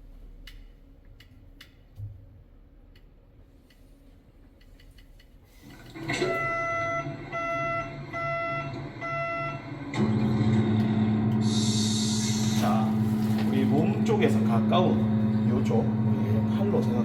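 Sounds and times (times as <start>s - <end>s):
excavator engine running: 5.6s - 17.0s
warning buzzer beeping: 6.2s - 9.9s.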